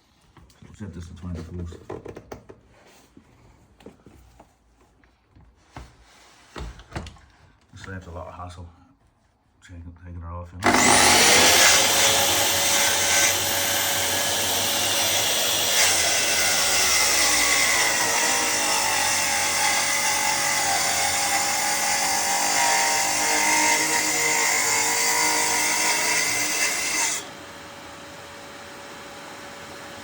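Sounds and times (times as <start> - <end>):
track saw cutting wood: 10.6 - 30.0.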